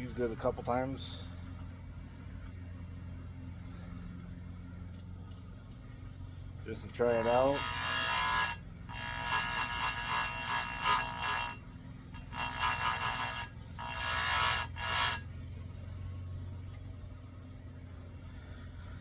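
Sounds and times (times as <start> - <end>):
grinder motor humming: 6.8 - 15.3
grinding wheel on chain teeth: 6.8 - 15.3.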